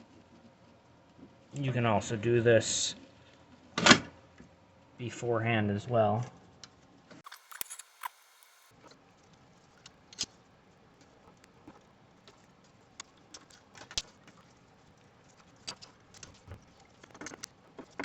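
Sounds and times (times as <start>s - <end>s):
hands clicking plastic and metal parts: 7.2s - 8.7s.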